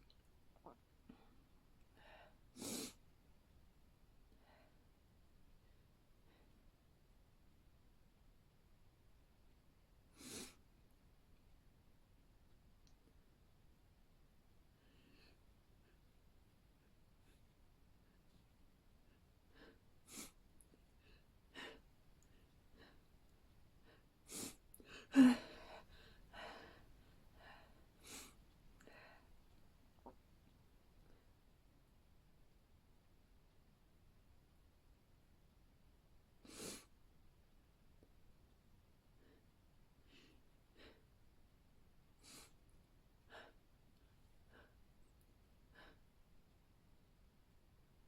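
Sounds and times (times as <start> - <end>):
uneven breaths: 23.8 - 29.6.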